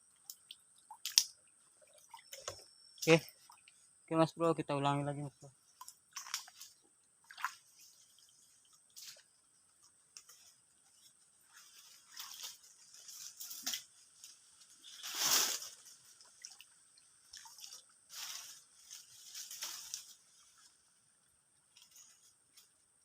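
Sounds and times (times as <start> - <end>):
lure splashing in water: 0.2 - 3.8, 5.8 - 8.3.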